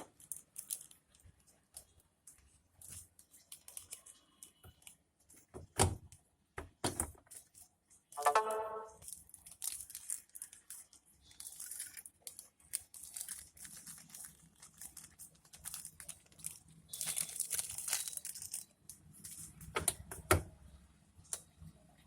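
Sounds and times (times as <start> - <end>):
packaging crinkling: 0.0 - 5.5, 8.9 - 19.8.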